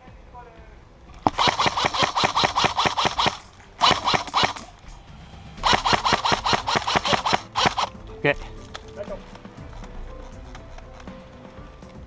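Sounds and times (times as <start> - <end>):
airsoft rifle full-auto bursts: 1.3 - 4.7.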